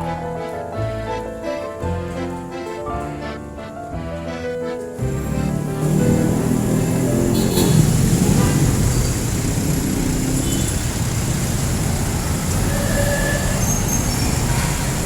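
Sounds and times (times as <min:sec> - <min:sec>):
jeepney engines running: 0:00.0 - 0:15.0
busy street traffic: 0:04.6 - 0:15.0.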